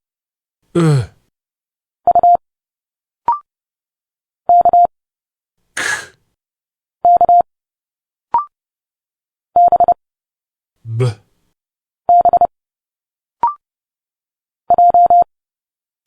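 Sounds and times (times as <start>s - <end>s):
short hissing spoken sound: 5.8s - 6.1s.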